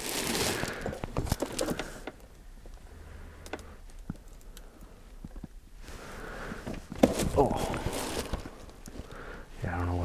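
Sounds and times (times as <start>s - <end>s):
clicks and taps of packages handled: 0.8s - 2.8s, 3.4s - 5.6s.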